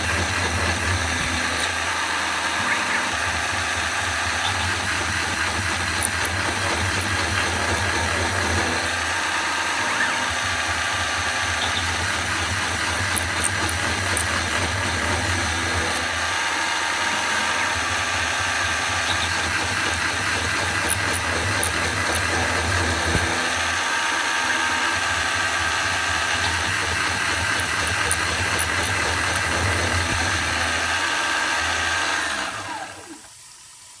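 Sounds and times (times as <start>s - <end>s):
high squeaks and ticks: 0.0s - 1.8s, 4.4s - 9.0s, 11.6s - 16.2s, 19.0s - 23.6s, 26.3s - 30.8s
mill drill drilling metal: 0.0s - 33.2s.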